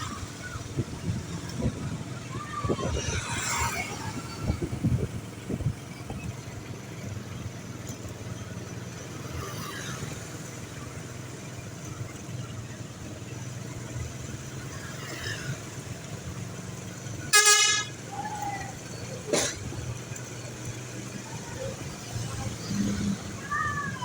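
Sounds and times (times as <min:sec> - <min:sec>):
roadside traffic: 0:00.0 - 0:24.0.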